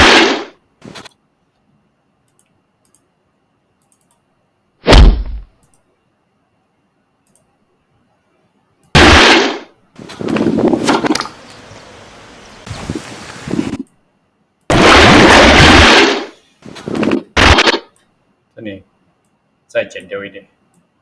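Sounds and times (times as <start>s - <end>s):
heavy impact hits: 4.9s - 5.5s.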